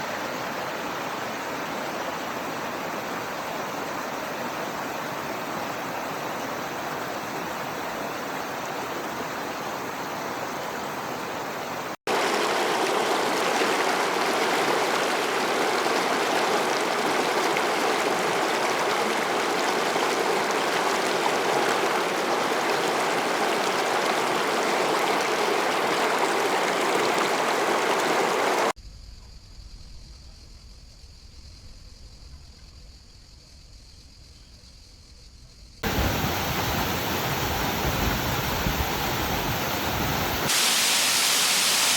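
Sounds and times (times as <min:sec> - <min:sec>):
waterfall rushing: 0:12.1 - 0:28.8, 0:35.8 - 0:41.9.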